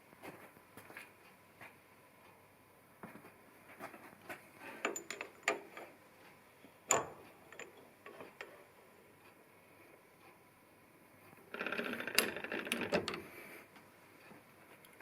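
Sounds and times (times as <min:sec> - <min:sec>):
metal parts clicking and tapping: 0:04.6 - 0:05.9, 0:06.9 - 0:08.6, 0:11.5 - 0:13.4.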